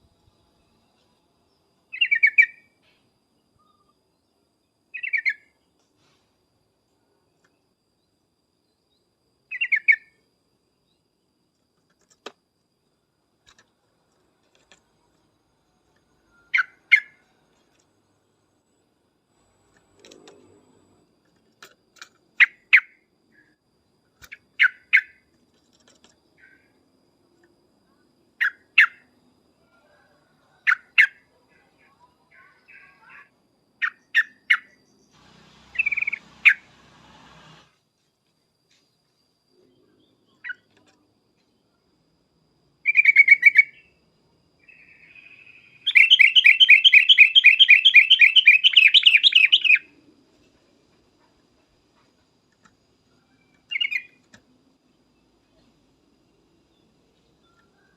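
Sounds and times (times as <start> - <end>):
hiss: 35.1 - 37.8
bird call notes: 35.3 - 36.8, 44.6 - 49.9.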